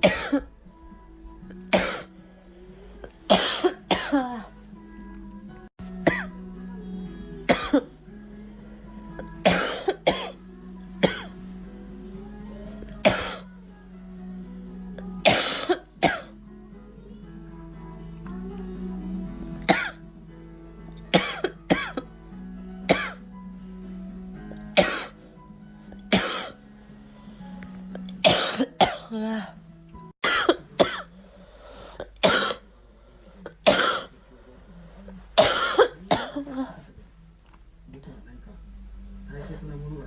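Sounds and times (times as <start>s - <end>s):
girl coughing: 0.0s - 0.5s, 1.6s - 2.1s, 3.3s - 4.5s, 6.0s - 6.3s, 7.4s - 7.9s, 9.4s - 10.4s, 11.0s - 11.4s, 13.0s - 13.5s, 15.1s - 16.3s, 19.6s - 20.0s, 21.1s - 22.1s, 22.9s - 23.2s, 24.7s - 25.2s, 26.1s - 26.6s, 28.1s - 29.2s, 30.2s - 31.1s, 32.0s - 32.6s, 33.5s - 34.1s, 35.4s - 36.7s
background music with low notes: 0.0s - 40.0s.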